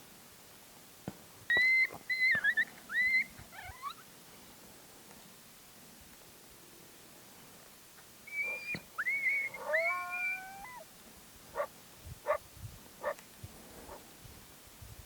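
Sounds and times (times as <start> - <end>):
coyote barks: 8.3 - 10.8, 11.5 - 12.4, 13.0 - 13.2
coyote howling: 8.3 - 10.9.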